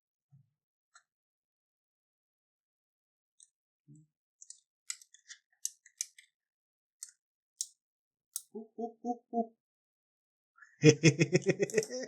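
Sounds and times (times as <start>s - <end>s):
small sharp clicks and ticks: 3.4s - 6.4s, 7.0s - 8.5s.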